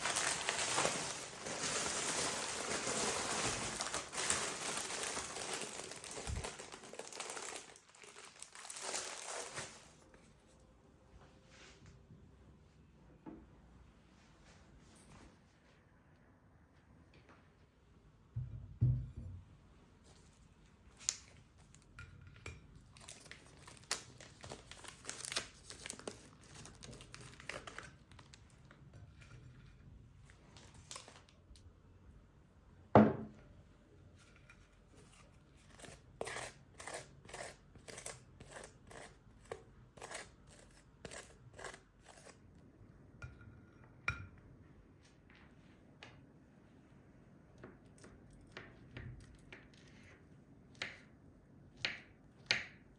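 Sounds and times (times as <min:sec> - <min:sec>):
crinkling and rustling: 0:00.0 - 0:10.7, 0:22.9 - 0:31.6.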